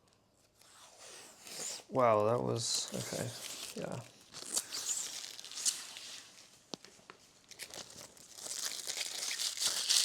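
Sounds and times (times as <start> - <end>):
plastic wrapping crinkling: 2.8 - 6.5, 7.4 - 10.0.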